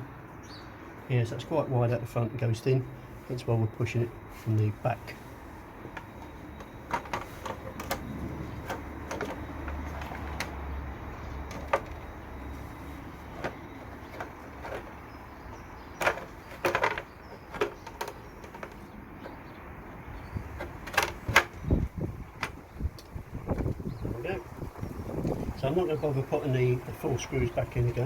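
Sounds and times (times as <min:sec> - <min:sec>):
plastic cowling knocks and clicks: 0:05.8 - 0:10.6, 0:11.2 - 0:12.2, 0:13.2 - 0:19.6, 0:20.2 - 0:23.9
sharp plastic clicks: 0:20.5 - 0:23.9.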